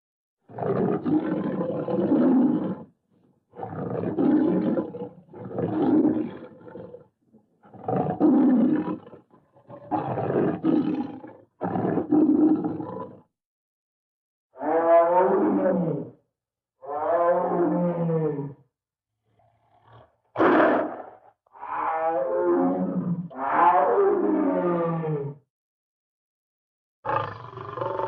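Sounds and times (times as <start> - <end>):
tiger roaring: 0.5 - 2.9, 3.5 - 13.2, 14.6 - 16.2, 16.8 - 18.6, 19.3 - 25.3, 27.1 - 28.0.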